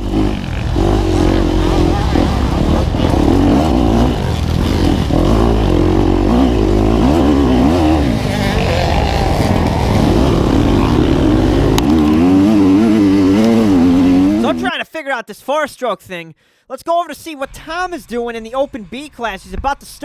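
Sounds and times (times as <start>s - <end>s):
dirt bike engine revving: 0.0s - 14.7s.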